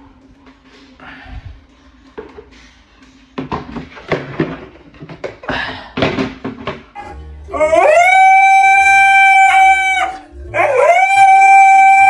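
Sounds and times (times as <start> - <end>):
dog howling: 7.0 - 12.0.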